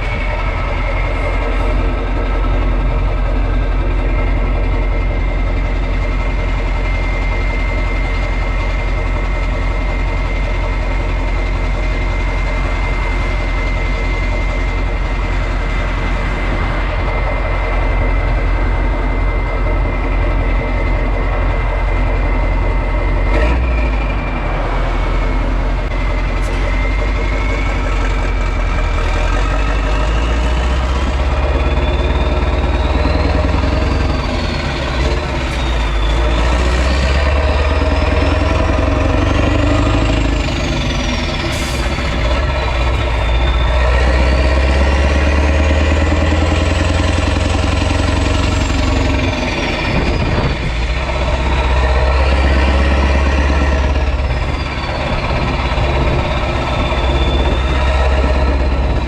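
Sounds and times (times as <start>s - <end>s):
diesel engine running: 0.0s - 59.0s
turbo whistle: 51.6s - 59.0s.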